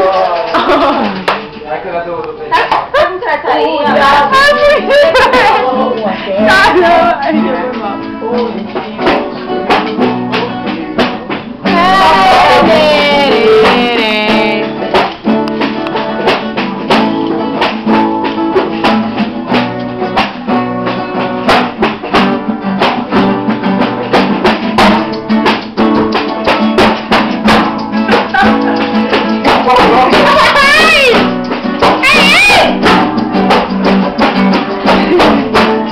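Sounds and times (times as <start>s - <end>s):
plucked guitar: 0.0s - 35.9s
person singing: 3.8s - 15.0s, 28.0s - 32.9s, 34.2s - 35.9s
steady percussive beat: 3.8s - 35.9s.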